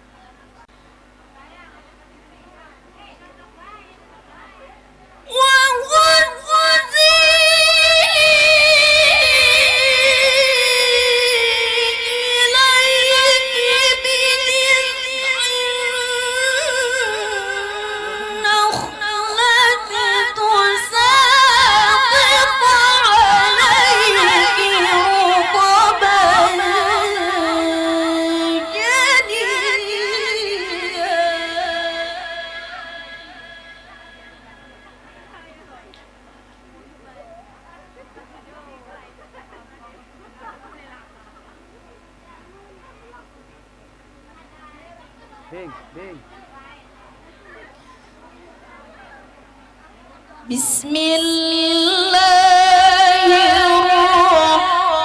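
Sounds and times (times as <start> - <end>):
woman chanting melodically: 4.1 - 36.1, 50.4 - 55.0.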